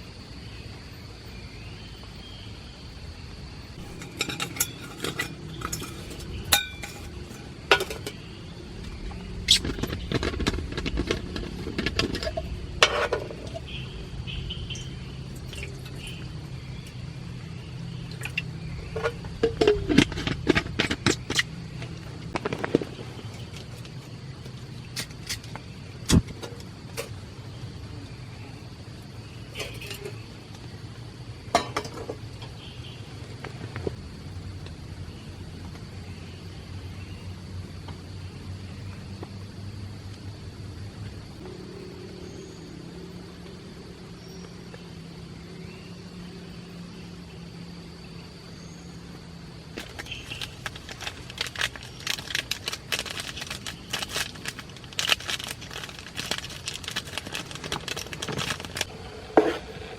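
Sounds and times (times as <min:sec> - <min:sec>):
high insect drone: 0:00.0 - 0:59.9
metal utensils clinking: 0:03.8 - 0:08.2.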